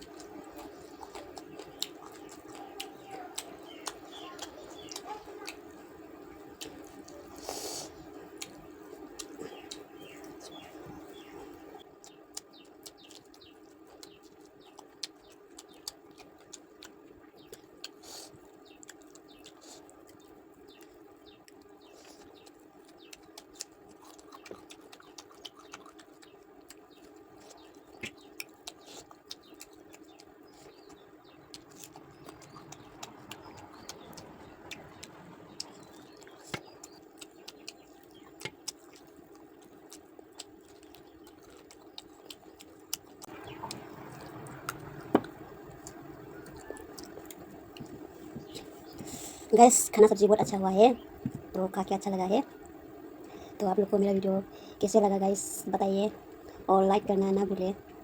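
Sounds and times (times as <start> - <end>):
wet chewing clicks and smacks: 0.0 - 49.5
steady low hum: 14.7 - 58.0.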